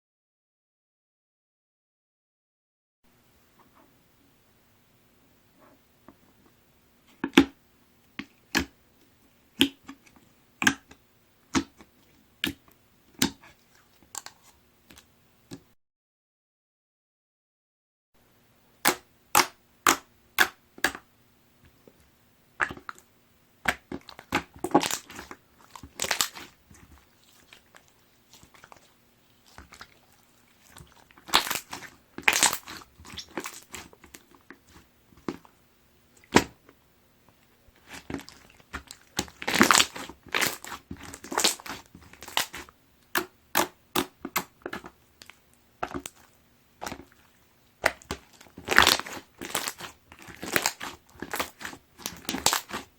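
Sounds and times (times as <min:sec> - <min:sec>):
slime squelching: 0:09.5 - 0:15.1, 0:18.8 - 0:21.0, 0:22.6 - 0:36.8, 0:37.4 - 0:52.9
wet clicks and pops: 0:18.8 - 0:21.0.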